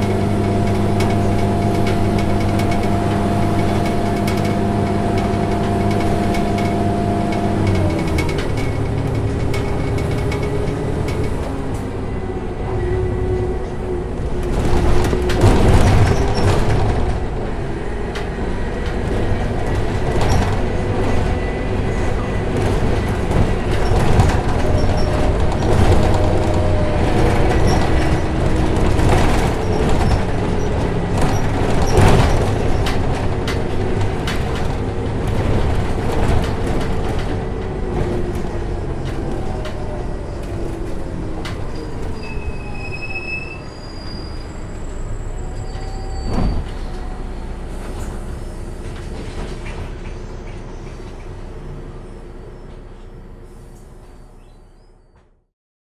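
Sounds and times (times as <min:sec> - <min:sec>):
bus engine and road rumble: 0:00.0 - 0:55.4
cabin rattles and knocks: 0:18.8 - 0:41.7
short high squeaks: 0:41.8 - 0:46.9.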